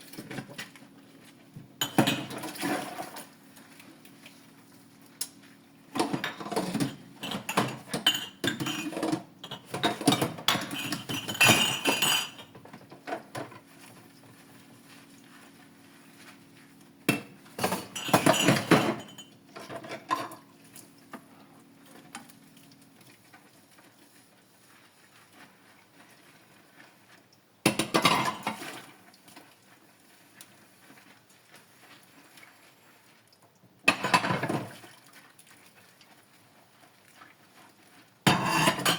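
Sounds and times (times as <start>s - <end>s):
dishes and cutlery clattering: 1.8s - 3.0s, 6.0s - 12.5s, 17.1s - 20.4s, 38.3s - 38.9s.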